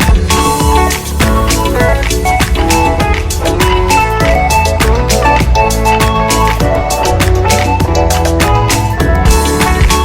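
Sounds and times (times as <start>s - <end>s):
music with fast beat: 0.0s - 10.0s
plucked guitar-like melody: 0.0s - 10.0s.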